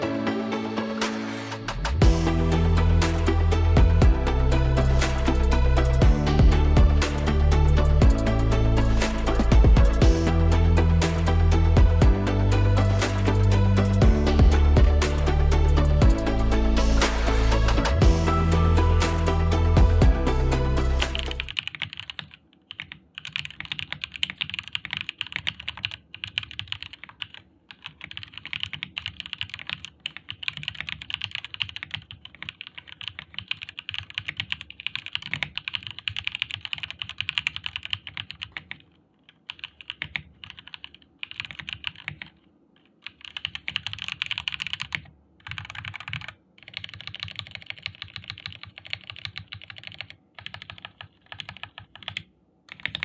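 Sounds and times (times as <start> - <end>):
fast typing on mechanical keyboard: 21.4 - 53.0.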